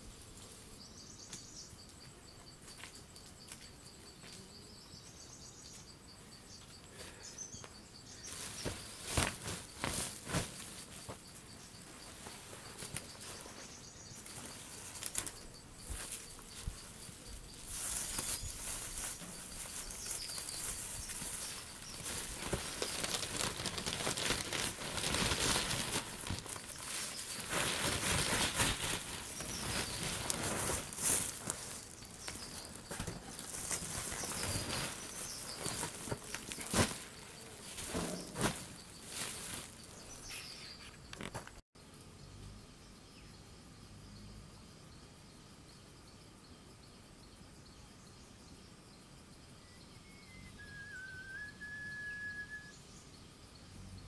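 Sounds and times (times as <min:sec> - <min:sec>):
faint bird chirps: 0:00.0 - 0:24.3, 0:31.3 - 0:41.2, 0:42.1 - 0:54.0
leaves and stalks rustling: 0:08.0 - 0:41.6.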